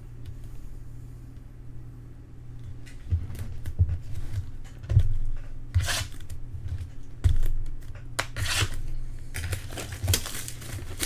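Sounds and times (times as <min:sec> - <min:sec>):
packaging tearing: 0:09.4 - 0:11.0.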